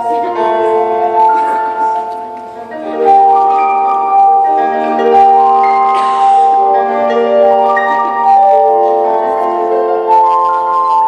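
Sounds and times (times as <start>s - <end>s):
live band playing chords: 0.0s - 11.0s.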